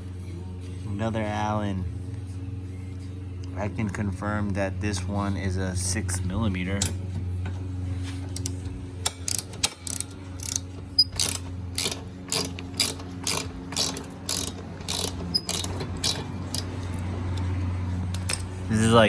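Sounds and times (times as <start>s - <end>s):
ratchet wrench clicking: 8.4s - 18.5s.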